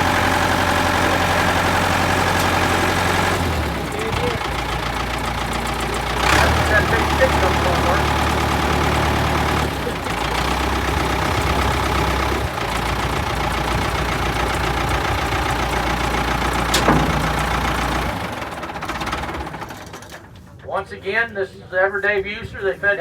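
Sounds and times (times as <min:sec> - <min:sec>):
tractor engine idling: 0:00.0 - 0:20.9.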